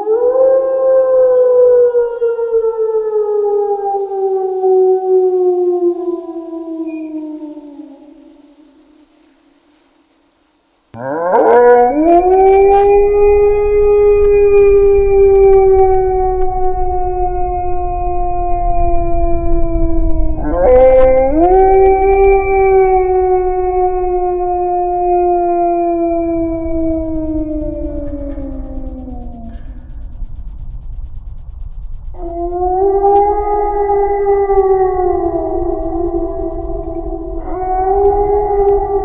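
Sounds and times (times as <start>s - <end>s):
wolf howling: 0.0s - 8.0s, 11.0s - 29.9s, 32.2s - 39.0s
low steady rumble: 26.7s - 39.0s.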